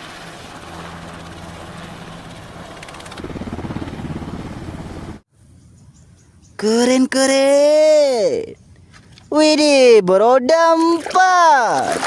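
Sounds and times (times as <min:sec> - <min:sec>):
helicopter rotor chopping: 0:00.0 - 0:05.2.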